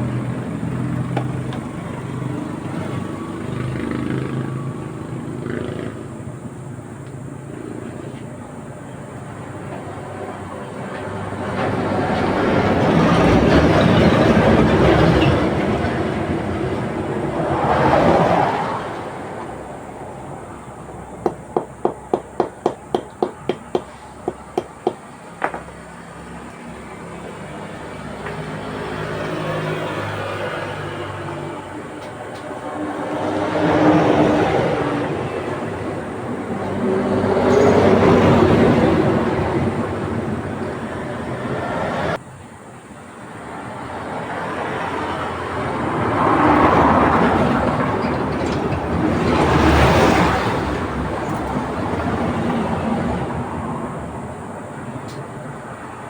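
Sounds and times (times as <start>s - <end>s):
vehicle passing: 0.0s - 6.8s, 10.8s - 42.2s
sharp hammer taps: 21.2s - 25.7s.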